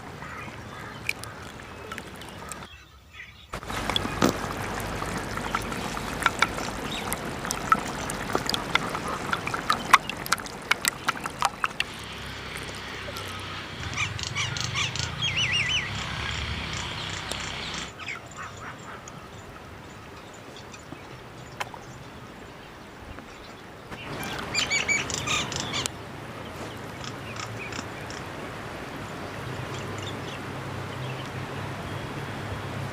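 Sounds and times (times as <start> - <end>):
steady outdoor noise: 0.0 - 32.9
warbling animal call: 3.6 - 17.9.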